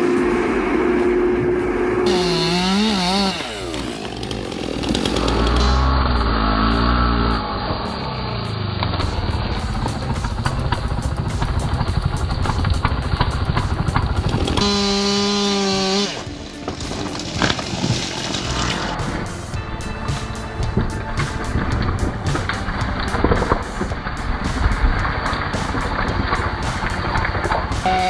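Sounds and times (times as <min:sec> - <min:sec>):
engines revving: 0:00.0 - 0:19.3
motor crackling under load: 0:02.1 - 0:06.0, 0:09.0 - 0:19.0.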